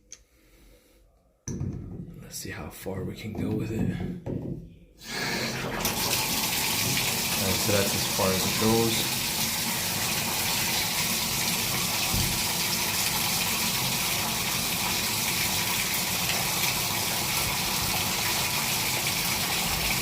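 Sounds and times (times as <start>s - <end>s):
shower water running: 5.0s - 20.0s.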